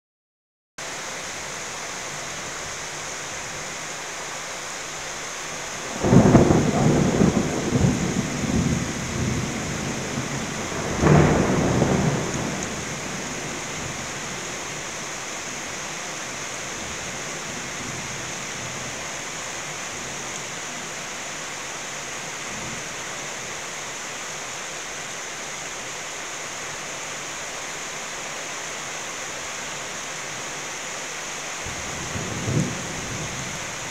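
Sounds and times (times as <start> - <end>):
rain-like hiss: 0.8 - 33.9
thunder rolling: 5.8 - 14.0.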